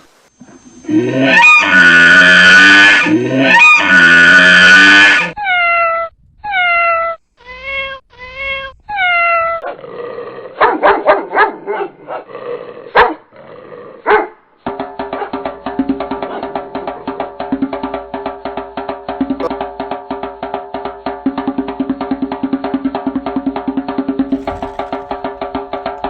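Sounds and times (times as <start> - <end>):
animal calling: 0.8 - 6.0, 24.3 - 26.0
animal yelping: 1.0 - 9.8, 24.4 - 26.0.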